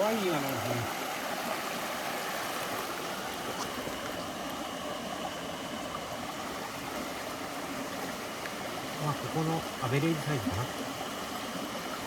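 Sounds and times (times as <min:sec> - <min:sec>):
stream water flowing: 0:00.0 - 0:12.0.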